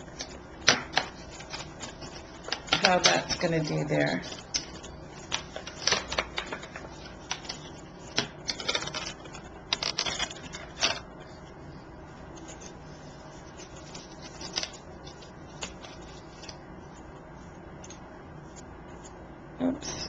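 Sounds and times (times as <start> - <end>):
card stock rustling and clicking: 0.0 - 11.1, 13.4 - 16.6.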